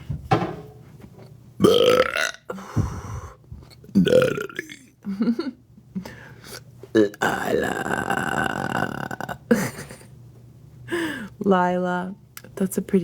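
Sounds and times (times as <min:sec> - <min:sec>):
woman belching loudly: 0:01.6 - 0:02.5, 0:04.0 - 0:04.9, 0:07.0 - 0:09.6.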